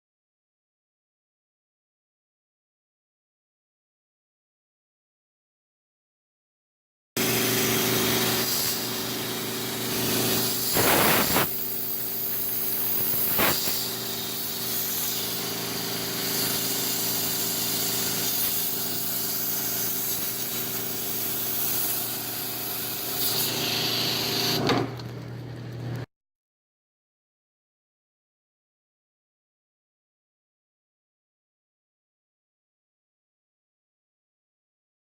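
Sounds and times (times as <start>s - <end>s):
hissing water spray: 7.2s - 24.6s
sprayer motor hum: 7.2s - 26.0s.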